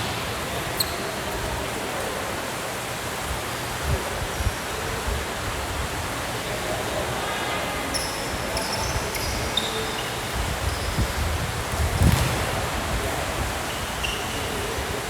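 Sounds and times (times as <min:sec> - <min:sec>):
sneaker squeaks: 0:00.0 - 0:01.4, 0:07.9 - 0:12.6, 0:13.6 - 0:15.0
room noise hiss: 0:00.0 - 0:15.0
basketball bouncing: 0:11.7 - 0:12.6.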